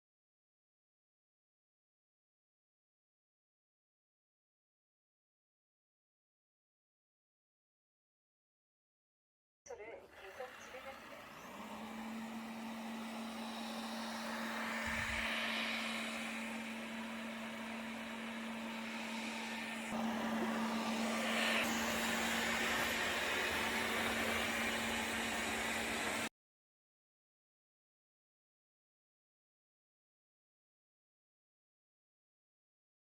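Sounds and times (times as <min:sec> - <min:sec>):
robot vacuum whirring: 0:10.0 - 0:26.3.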